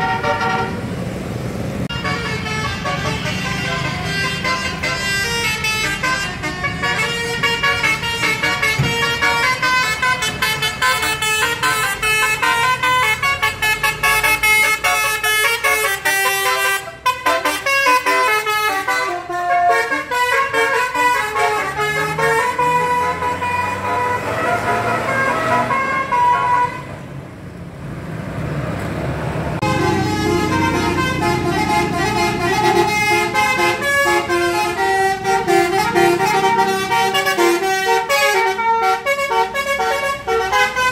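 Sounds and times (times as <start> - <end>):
musical horn playing a melody: 1.9 - 26.9, 29.6 - 40.9
vehicle engine revving: 20.8 - 26.6, 27.7 - 38.3.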